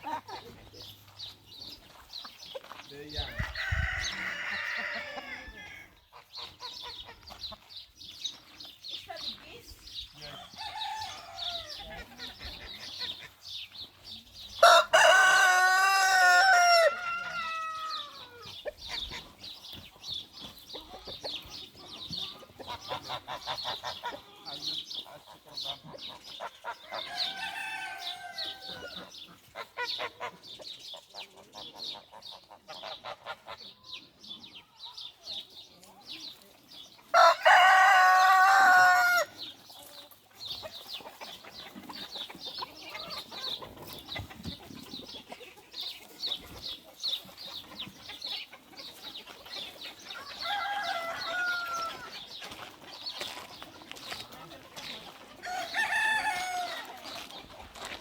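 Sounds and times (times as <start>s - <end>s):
chickens clucking: 0.0s - 58.0s
rooster crowing: 14.6s - 18.4s, 27.0s - 29.0s, 37.2s - 39.3s, 50.4s - 52.1s, 55.4s - 56.8s.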